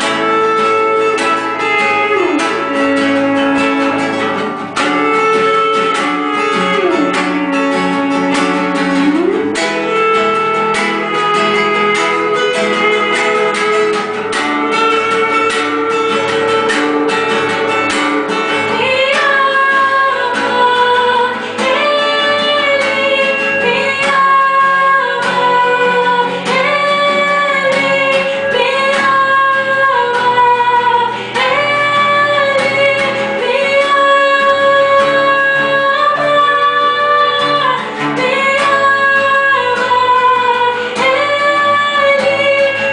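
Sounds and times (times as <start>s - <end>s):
acoustic guitar strumming: 0.0s - 42.9s
woman singing: 0.0s - 42.9s.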